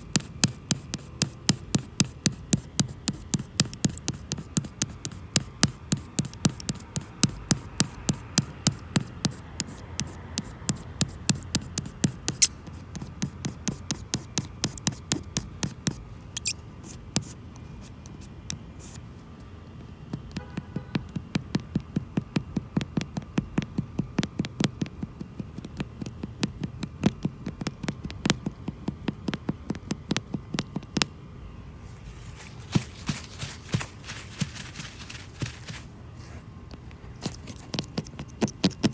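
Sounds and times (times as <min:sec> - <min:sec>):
razor blade scraping glass: 0:16.4 - 0:16.6.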